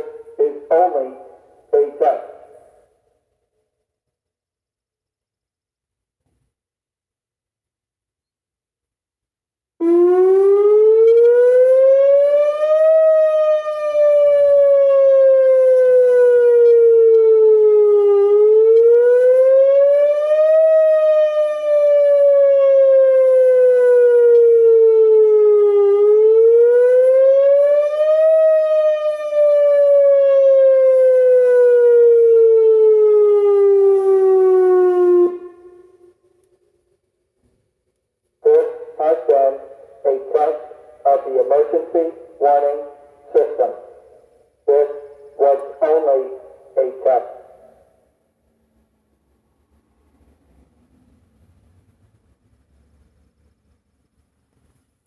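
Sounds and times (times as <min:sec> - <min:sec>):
tornado warning siren wailing: 0:00.0 - 0:02.6, 0:09.8 - 0:36.4, 0:38.4 - 0:47.9.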